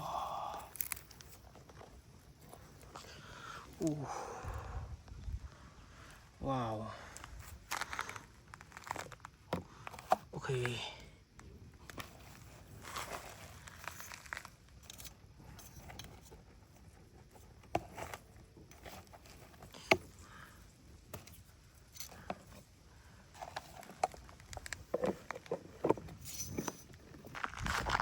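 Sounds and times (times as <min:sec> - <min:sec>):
hands handling objects: 0:11.8 - 0:28.0.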